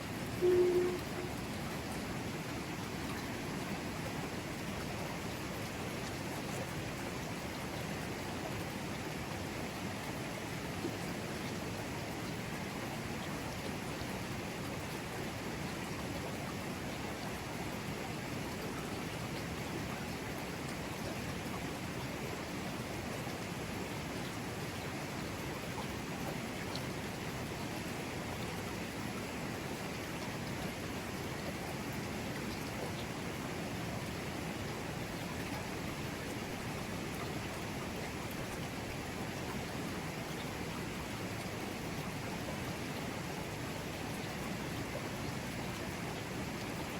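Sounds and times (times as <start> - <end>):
river flowing over rocks: 21.7 - 46.9.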